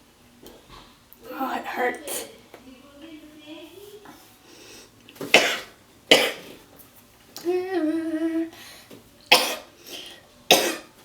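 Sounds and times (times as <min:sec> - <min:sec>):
woman coughing: 0:05.3 - 0:06.4, 0:09.3 - 0:09.7, 0:10.5 - 0:10.9.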